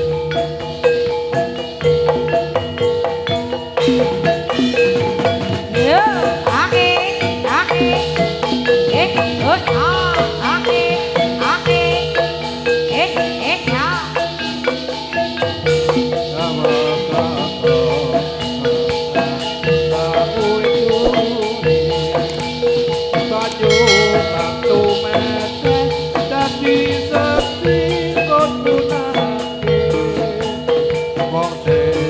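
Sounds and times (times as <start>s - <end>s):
metallophones ringing: 0.0s - 32.0s
rattling jingles: 0.0s - 32.0s
drum strokes: 13.8s - 32.0s.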